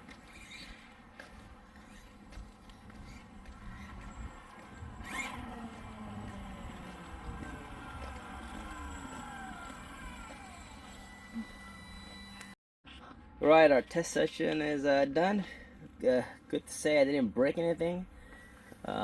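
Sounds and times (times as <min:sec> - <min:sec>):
electric motor whining: 0:01.7 - 0:12.6.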